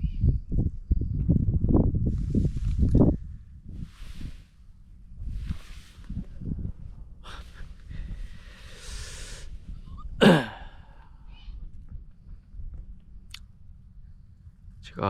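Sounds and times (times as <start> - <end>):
man sniffling and breathing shakily: 7.2 - 11.4
man sobbing loudly: 10.2 - 10.9.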